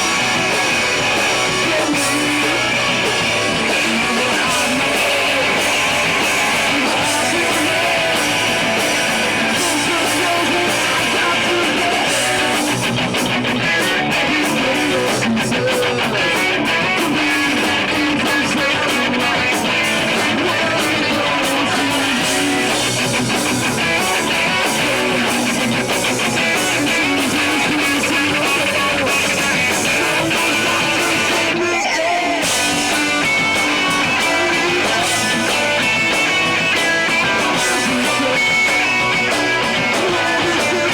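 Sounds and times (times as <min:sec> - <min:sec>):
electric guitars: 0:00.0 - 0:40.9
live rock band playing: 0:00.0 - 0:40.9.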